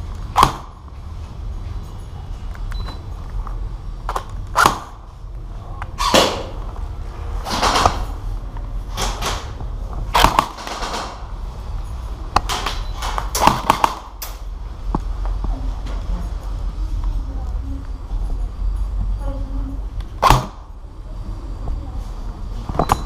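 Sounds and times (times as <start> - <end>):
steady low rumble: 0.0 - 23.0.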